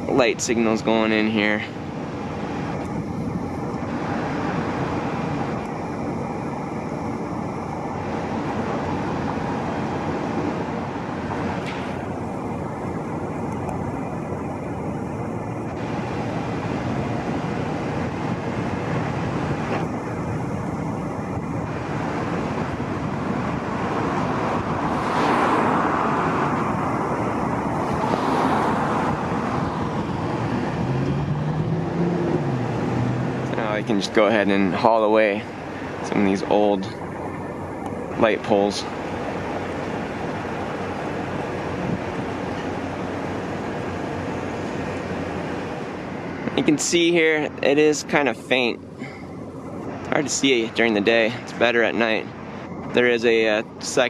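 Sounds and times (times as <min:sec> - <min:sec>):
road traffic noise: 0:00.0 - 0:54.0
vehicle passing close: 0:21.6 - 0:53.9.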